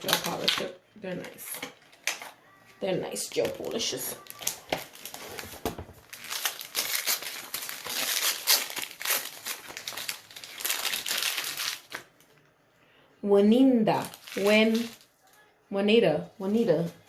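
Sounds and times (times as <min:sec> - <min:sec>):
packaging crinkling: 0:03.3 - 0:12.5, 0:13.9 - 0:15.4.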